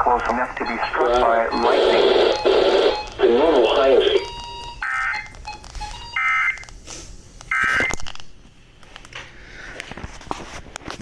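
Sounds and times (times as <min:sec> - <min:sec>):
two-tone digital data warble: 0:00.0 - 0:06.6.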